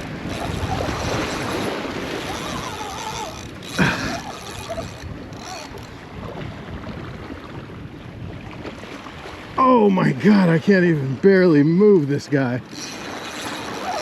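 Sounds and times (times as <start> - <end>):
wind on microphone: 0.0 - 9.6
surf washing against jetty: 0.0 - 14.0.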